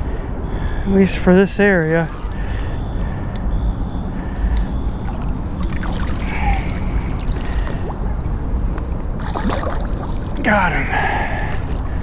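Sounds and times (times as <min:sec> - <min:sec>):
water splashing: 0:01.7 - 0:02.8, 0:04.8 - 0:12.0.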